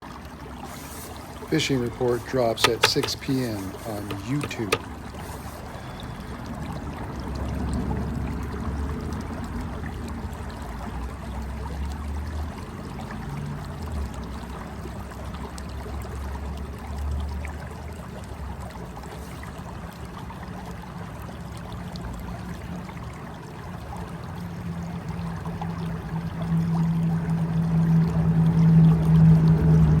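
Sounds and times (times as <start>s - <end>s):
river water rushing: 0.3s - 6.4s.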